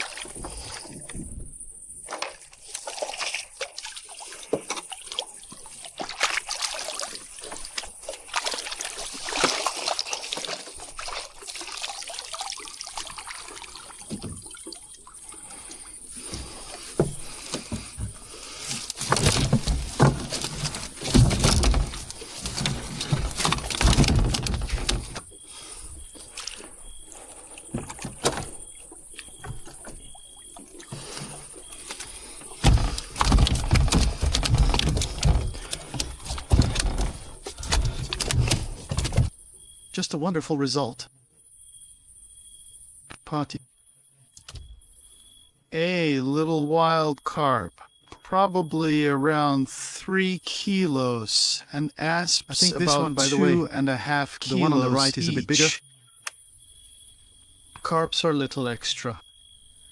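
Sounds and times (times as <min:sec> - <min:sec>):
water sloshing and trickling: 0:00.0 - 0:39.4
knocks and rustles of fishing gear: 0:02.0 - 0:11.3, 0:15.3 - 0:39.4.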